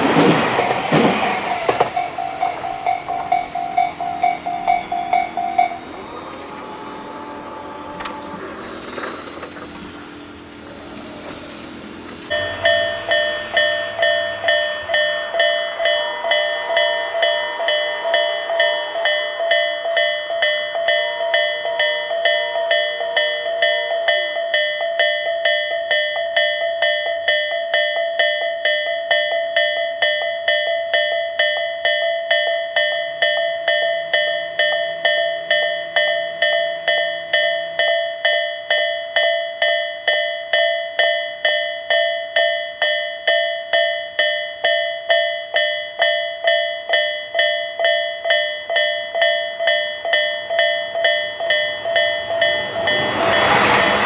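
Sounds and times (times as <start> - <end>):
passing train rumble: 0.0 - 24.1, 32.7 - 40.6, 44.6 - 54.0
level-crossing warning bell: 0.0 - 54.0.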